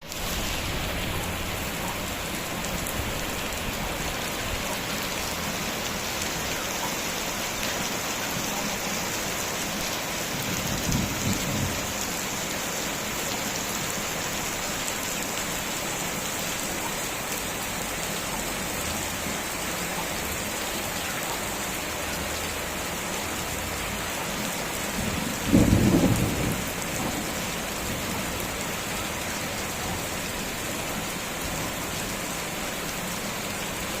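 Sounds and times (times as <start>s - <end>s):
heavy rain falling: 0.0s - 34.0s
rumbles of thunder: 10.2s - 12.0s, 24.9s - 28.2s.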